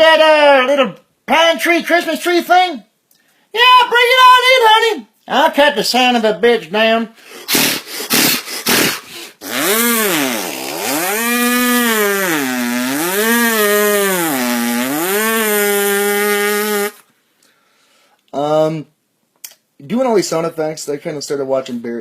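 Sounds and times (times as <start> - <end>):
man imitating chainsaw vocally: 7.4 - 17.0.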